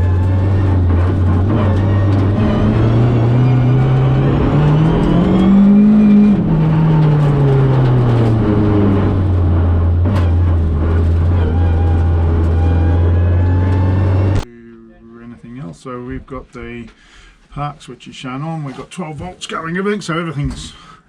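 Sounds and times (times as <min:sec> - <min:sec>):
rally car engine revving: 0:00.0 - 0:14.5.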